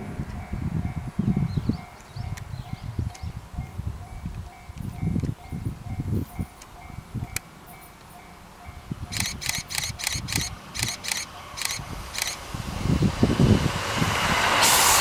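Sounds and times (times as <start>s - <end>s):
level crossing warning bell: 3.6s - 9.1s.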